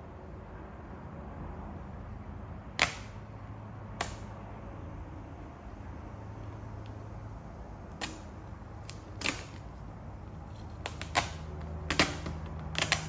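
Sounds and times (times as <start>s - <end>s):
steady low hum: 0.0s - 13.0s
vinyl film snapping: 2.8s - 3.2s, 4.0s - 4.3s, 7.9s - 9.8s, 10.7s - 13.0s.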